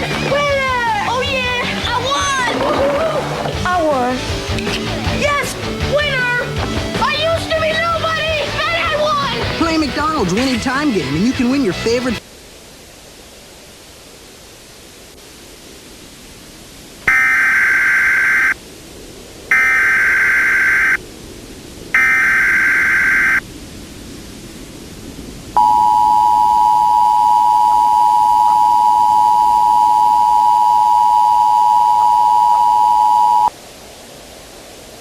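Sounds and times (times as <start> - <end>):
two-tone attention signal: 25.6 - 33.5.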